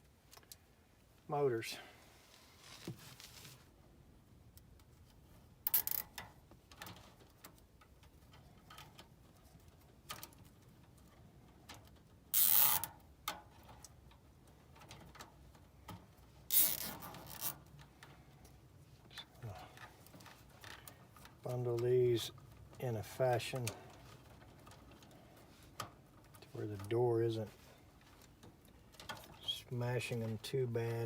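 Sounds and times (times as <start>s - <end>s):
small clicks of wires: 0.2s - 0.6s.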